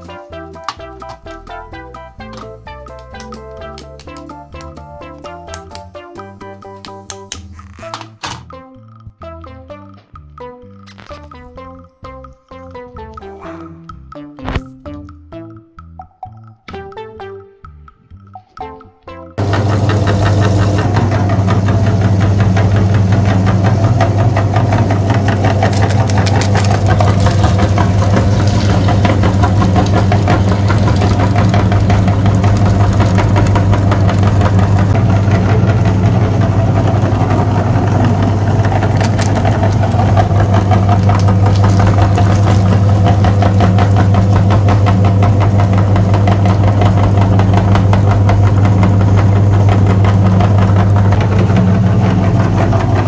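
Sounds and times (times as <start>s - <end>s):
engine humming with fast pulsing: 19.4s - 53.0s.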